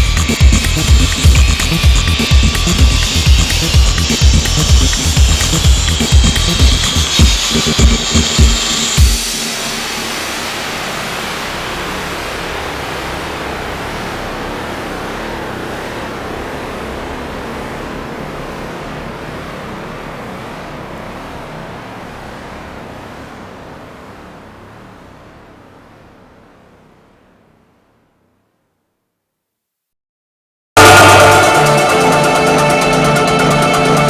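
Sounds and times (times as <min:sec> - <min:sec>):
low rumble: 0:00.0 - 0:11.9
steady rushing noise: 0:00.0 - 0:27.8, 0:30.8 - 0:34.0.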